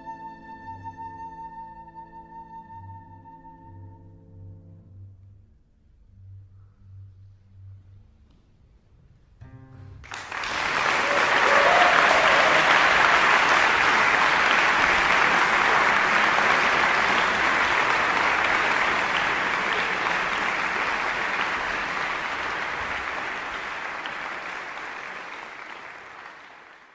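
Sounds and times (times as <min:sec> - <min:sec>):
audience applause: 0:10.0 - 0:26.9.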